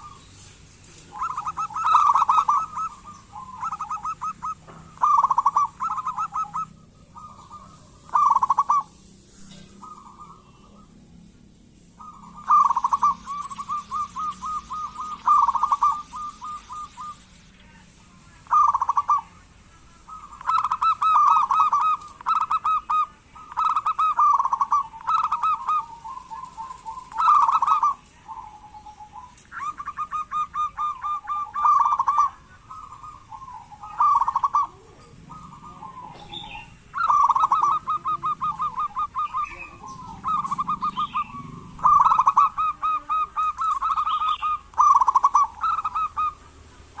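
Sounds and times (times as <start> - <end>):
doves calling with trilled notes: 0.0 - 47.0.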